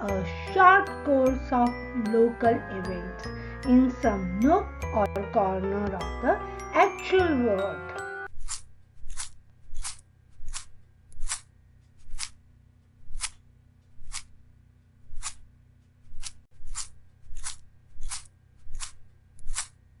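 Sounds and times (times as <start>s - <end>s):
sharp swishing strokes: 8.4s - 12.4s, 13.0s - 13.4s, 14.0s - 14.3s, 15.1s - 15.4s.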